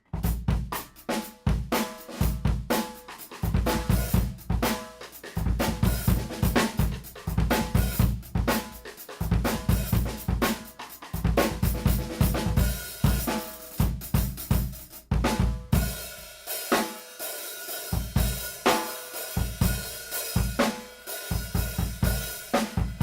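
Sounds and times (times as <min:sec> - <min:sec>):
bass drum: 0:00.1 - 0:02.8, 0:03.4 - 0:16.1, 0:21.4 - 0:23.0
cymbals: 0:15.7 - 0:23.0.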